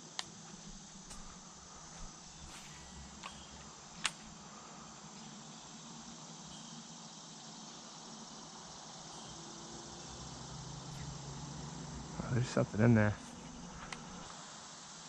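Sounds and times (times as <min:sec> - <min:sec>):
insect trilling: 0:00.0 - 0:15.0.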